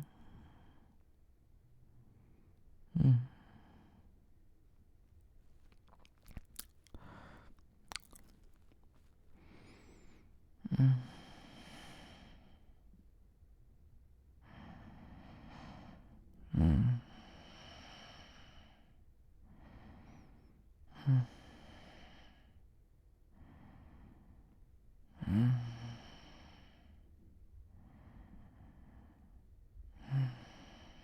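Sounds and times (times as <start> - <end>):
man breathing slowly: 5.8 - 8.2.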